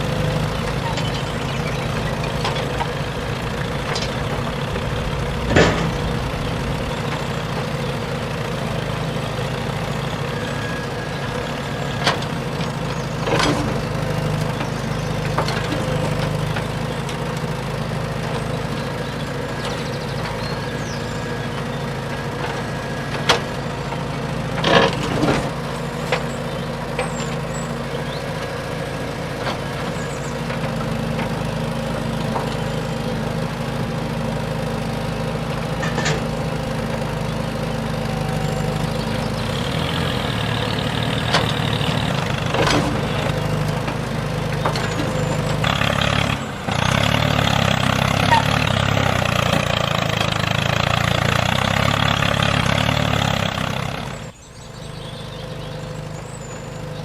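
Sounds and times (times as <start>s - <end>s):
small tractor motor running: 0.0s - 57.0s
sharp knocks and clatters: 5.5s - 6.1s.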